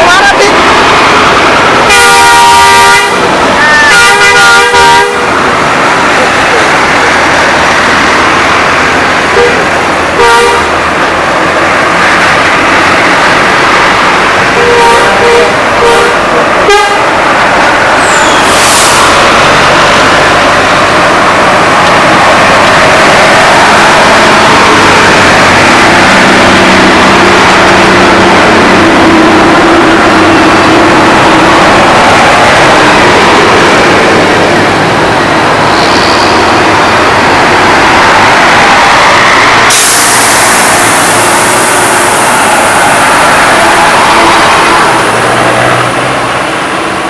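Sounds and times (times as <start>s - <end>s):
diesel engines running: 0.0s - 47.0s
loud steady rushing noise: 0.0s - 47.0s
bus horn toots: 1.8s - 5.4s, 9.3s - 10.8s, 14.5s - 17.2s.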